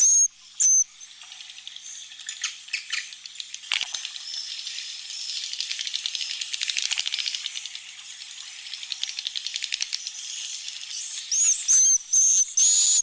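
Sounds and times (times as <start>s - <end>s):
loud hissing whistling calls: 0.0s - 1.2s, 4.1s - 6.6s, 7.4s - 13.0s
swiftlets twittering and clicking: 1.5s - 13.0s.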